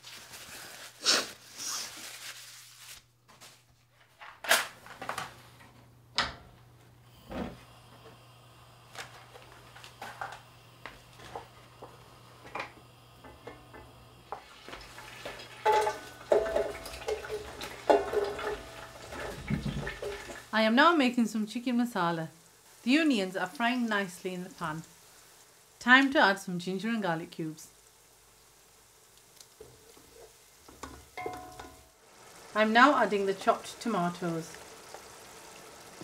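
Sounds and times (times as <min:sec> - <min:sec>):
pots and pans clinking: 0:12.4 - 0:20.4, 0:30.0 - 0:32.0.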